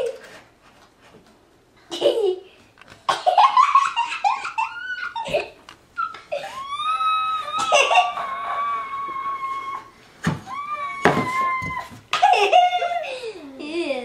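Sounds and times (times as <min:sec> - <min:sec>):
toddler squealing and giggling: 0:04.0 - 0:09.9, 0:10.5 - 0:13.2.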